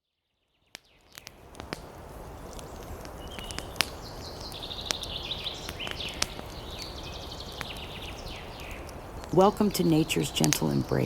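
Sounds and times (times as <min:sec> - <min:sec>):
campfire crackling and popping: 0:00.7 - 0:11.0
songbird chirping and trilling: 0:02.3 - 0:11.0.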